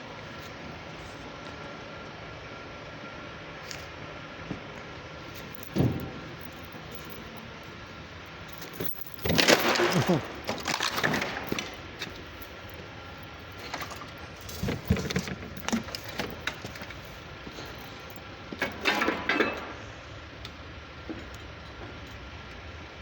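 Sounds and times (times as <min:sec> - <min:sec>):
steady machine hum: 0:00.0 - 0:23.0
metal tools clinking and scraping: 0:08.5 - 0:12.7, 0:13.5 - 0:19.8.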